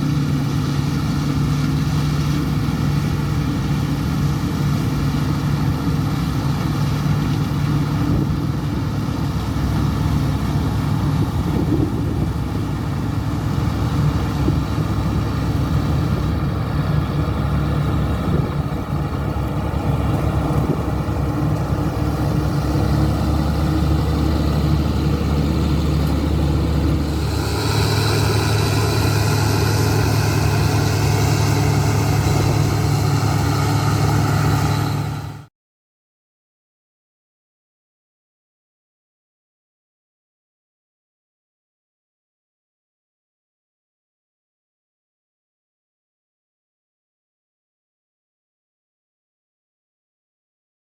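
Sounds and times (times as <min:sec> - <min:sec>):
diesel engines running: 0:00.0 - 0:35.5
engine hiss and high whine: 0:00.0 - 0:35.5.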